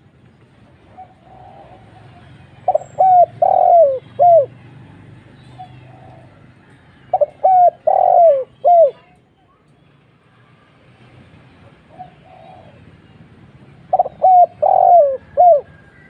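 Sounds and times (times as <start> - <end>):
dove cooing: 0.9 - 4.6, 5.5 - 9.1, 11.9 - 12.9, 13.8 - 16.0
faint dove cooing: 0.9 - 4.6, 5.4 - 9.2, 11.9 - 13.0, 13.9 - 16.0.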